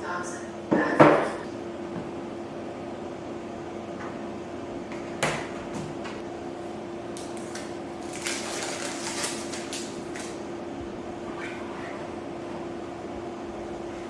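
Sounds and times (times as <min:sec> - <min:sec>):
steady hum: 0:00.0 - 0:14.0.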